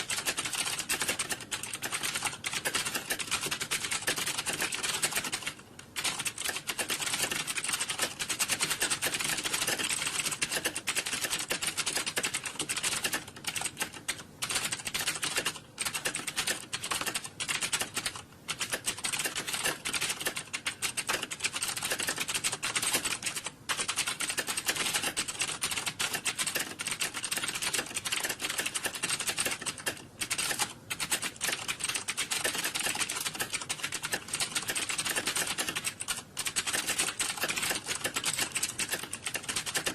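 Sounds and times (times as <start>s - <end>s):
fast typing on keyboards: 0.0s - 39.9s.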